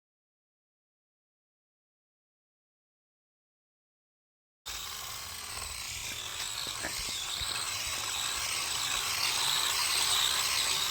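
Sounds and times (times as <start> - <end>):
small electric motor whining: 4.7 - 10.9.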